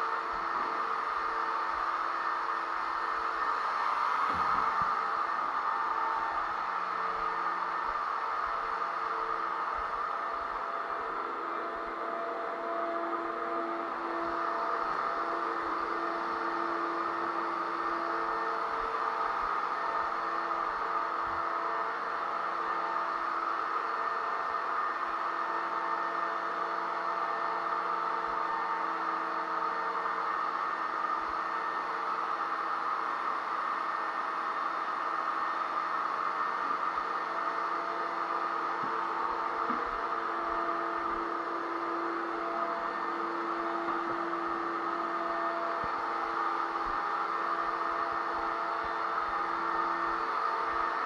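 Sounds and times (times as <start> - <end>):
electric sander motor whirring: 0.0 - 7.8, 35.7 - 51.0
drywall sander motor whine: 0.0 - 51.0.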